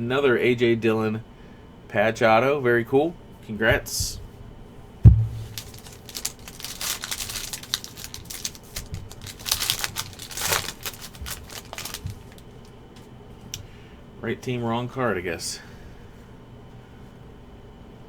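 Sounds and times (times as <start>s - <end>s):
thump: 5.0s - 5.6s
cardboard and foil crinkling and tearing: 5.2s - 12.7s.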